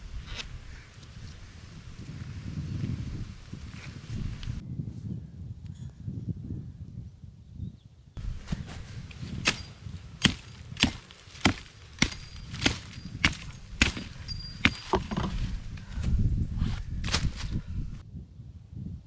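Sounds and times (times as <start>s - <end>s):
blade chopping wood: 8.2s - 15.6s, 17.0s - 17.6s.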